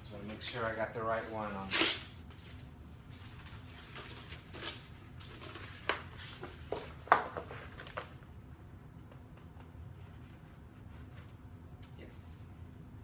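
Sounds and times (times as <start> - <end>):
low steady hum: 0.0 - 13.0
vinyl sheet rustling and tapping: 3.3 - 8.2.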